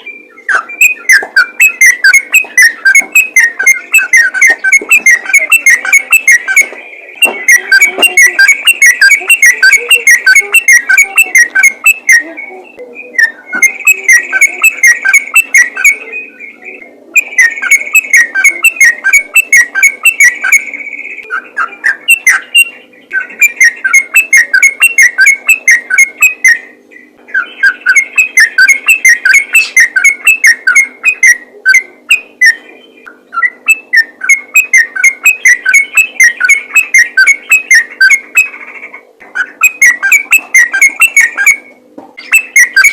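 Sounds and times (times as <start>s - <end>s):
bulbul singing: 0.0s - 42.9s.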